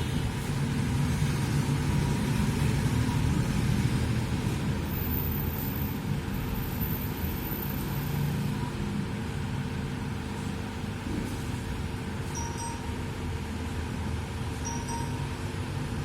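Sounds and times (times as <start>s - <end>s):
thin steady hum: 12.2s - 16.0s.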